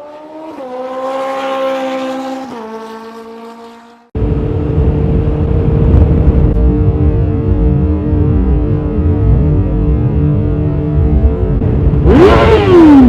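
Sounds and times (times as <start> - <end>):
vehicle engine accelerating: 0.0 - 13.0
steady low drone: 4.2 - 12.1.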